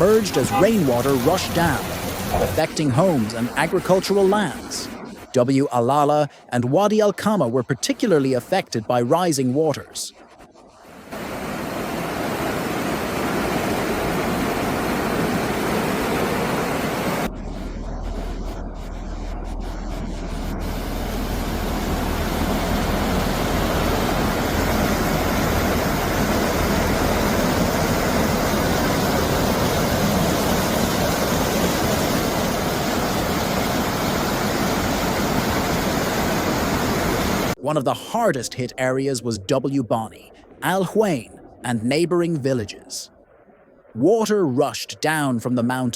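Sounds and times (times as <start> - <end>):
floodwater rushing: 0.0 - 4.9, 11.1 - 17.3, 20.9 - 37.6.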